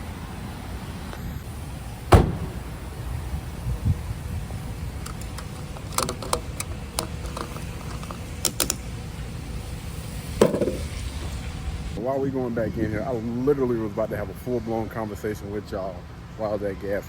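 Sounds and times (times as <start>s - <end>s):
steady low rumble: 0.0s - 13.4s
gas pump nozzle clicking: 4.7s - 9.0s.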